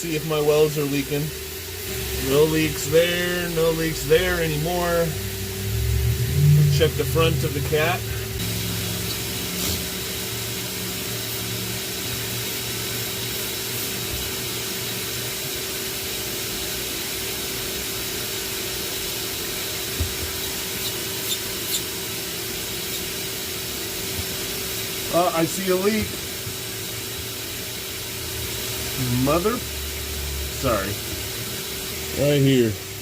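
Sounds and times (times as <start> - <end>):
exhaust hissing: 0.0 - 33.0
engine low hum: 0.4 - 12.8.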